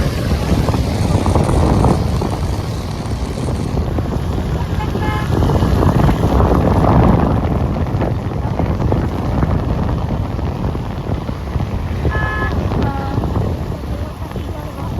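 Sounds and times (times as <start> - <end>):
loud low rumble: 0.0 - 14.9
wind buffeting microphone: 0.0 - 14.9
horn toot: 4.6 - 5.6, 12.1 - 13.2.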